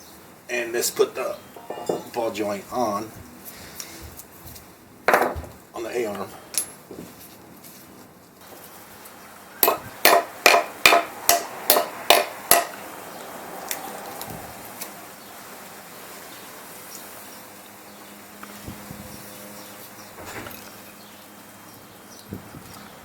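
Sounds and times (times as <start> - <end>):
hammer blows on metal: 1.4 - 2.6, 9.6 - 12.8.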